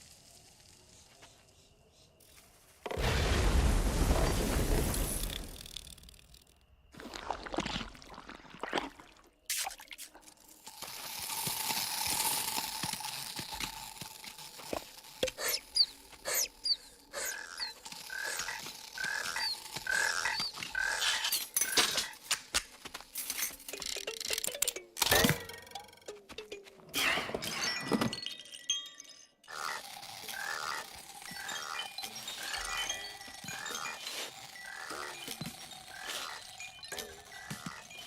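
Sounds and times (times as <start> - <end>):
short squeaky chirps: 15.3 - 18.6
cartoon clicks and knocks: 23.6 - 27.0.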